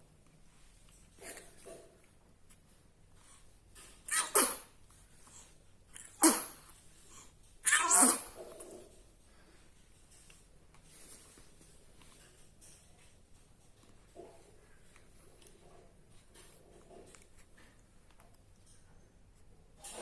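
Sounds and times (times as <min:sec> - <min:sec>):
baby sneezing: 0:04.0 - 0:04.8, 0:06.0 - 0:06.7, 0:07.6 - 0:08.6.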